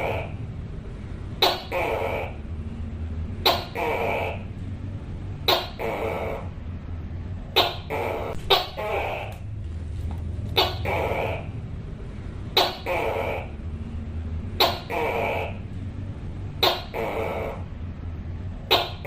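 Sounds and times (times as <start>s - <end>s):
gecko calling: 0.0s - 0.4s, 1.4s - 2.5s, 3.4s - 4.6s, 5.4s - 6.6s, 7.5s - 9.6s, 10.5s - 11.6s, 12.5s - 13.6s, 14.6s - 15.7s, 16.6s - 17.7s, 18.7s - 19.0s.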